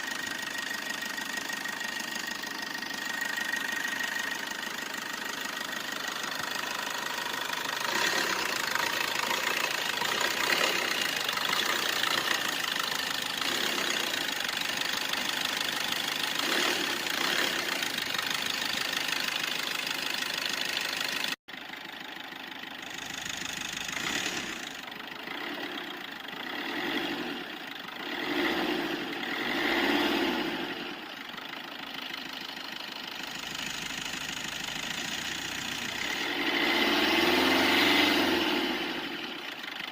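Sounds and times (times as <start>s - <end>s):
car engine revving: 6.3s - 12.7s, 13.3s - 14.4s, 16.3s - 18.3s, 23.8s - 25.8s, 26.4s - 31.0s, 34.8s - 39.4s.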